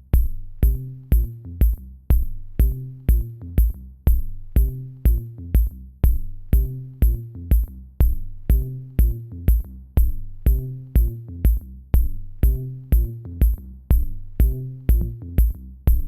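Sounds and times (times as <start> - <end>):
electronic music with kick drum: 0.0 - 16.0.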